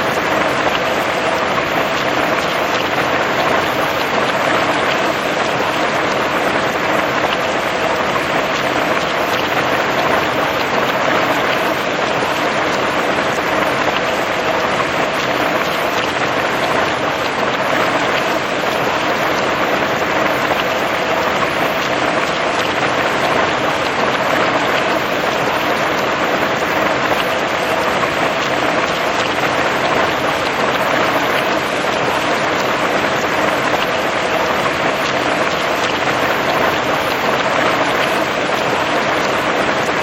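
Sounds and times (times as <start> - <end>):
heavy rain pattering: 0.0 - 40.0.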